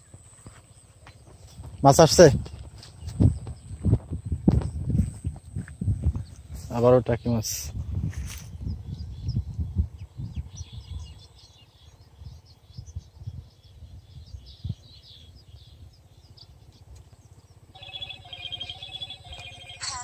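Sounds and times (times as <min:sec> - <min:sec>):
faint bird chirps: 0:08.5 - 0:20.0
mobile phone ringtone: 0:17.8 - 0:20.0.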